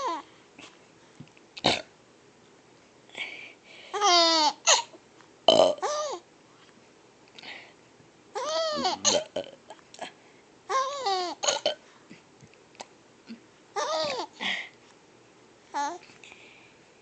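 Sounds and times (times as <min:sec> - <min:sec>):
baby squealing laughs: 0:04.0 - 0:04.9, 0:05.8 - 0:06.2, 0:08.4 - 0:09.1, 0:10.7 - 0:11.4, 0:13.8 - 0:14.4.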